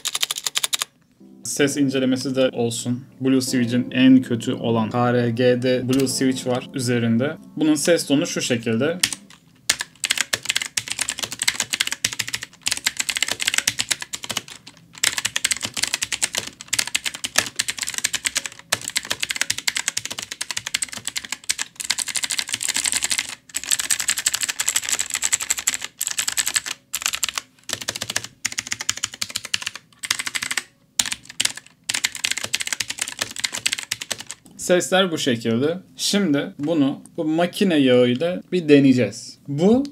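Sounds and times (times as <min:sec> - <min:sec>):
clicky keyboard typing: 0:00.0 - 0:00.9, 0:09.0 - 0:34.4.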